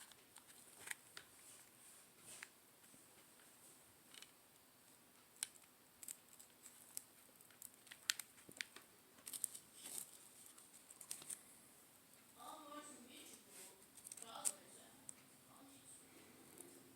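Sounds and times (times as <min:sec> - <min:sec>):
small clicks and crinkles: 0:00.0 - 0:04.4, 0:05.2 - 0:11.5, 0:13.2 - 0:15.3.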